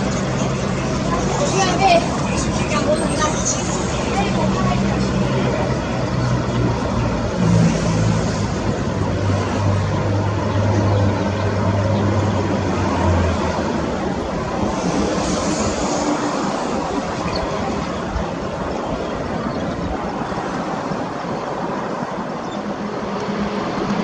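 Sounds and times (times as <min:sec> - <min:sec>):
engine drone: 0:00.0 - 0:18.9
outdoor background noise: 0:00.0 - 0:24.0.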